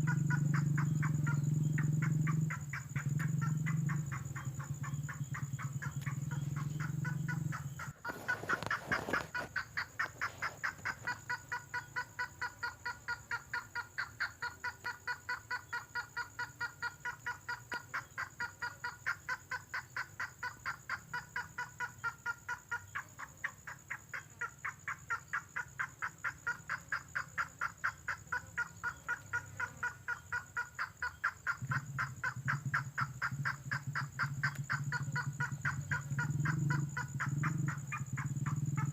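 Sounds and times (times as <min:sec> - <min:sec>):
low droning bird call: 0:00.0 - 0:09.2.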